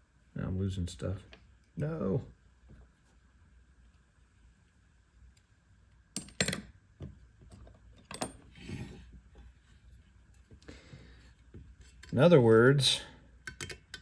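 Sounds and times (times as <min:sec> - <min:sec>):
small metal parts clicking: 0:13.4 - 0:14.0.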